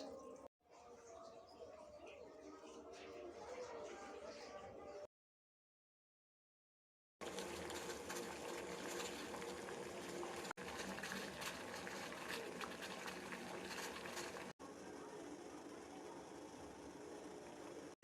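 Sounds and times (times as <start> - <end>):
herbal decoction bubbling at the boil: 7.2 - 18.0.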